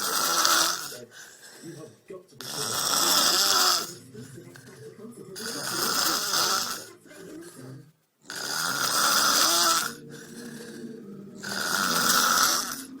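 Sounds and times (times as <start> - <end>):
loud snoring: 0.0 - 1.1, 2.4 - 4.0, 5.4 - 7.6, 8.2 - 13.0.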